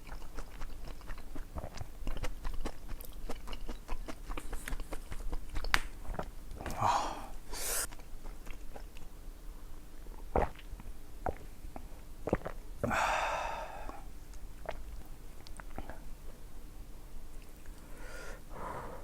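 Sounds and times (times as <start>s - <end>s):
person eating: 0.0s - 9.1s
loud breathy noise: 17.8s - 19.0s.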